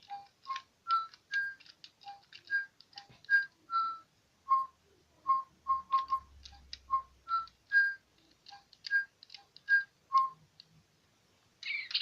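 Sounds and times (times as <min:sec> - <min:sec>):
electronic toy bird tweeting: 0:00.0 - 0:04.0, 0:05.7 - 0:10.4, 0:11.6 - 0:12.0.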